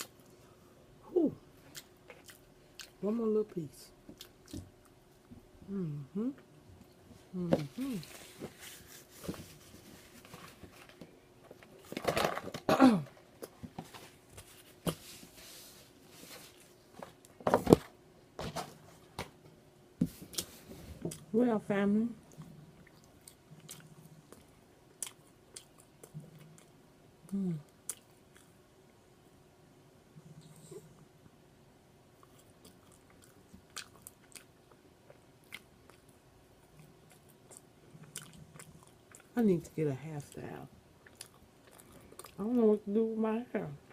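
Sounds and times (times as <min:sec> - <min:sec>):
woman chewing with mouth clicks: 0:01.6 - 0:03.0, 0:04.1 - 0:06.5, 0:22.3 - 0:28.6, 0:32.2 - 0:39.3, 0:41.0 - 0:42.4.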